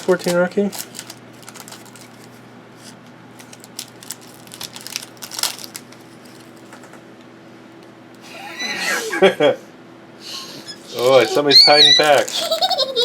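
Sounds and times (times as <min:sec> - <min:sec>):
card wrappers crinkling: 0:00.0 - 0:06.7, 0:10.9 - 0:13.0
faint steady hum: 0:00.7 - 0:13.0
cards being handled: 0:10.9 - 0:12.7.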